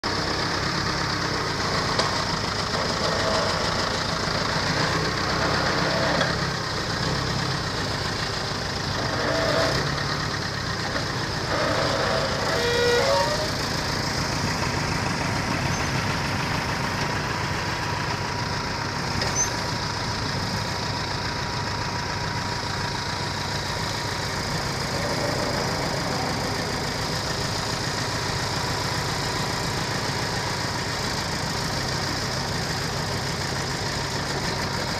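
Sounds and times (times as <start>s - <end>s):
heavy diesel machinery running: 0.0s - 34.9s.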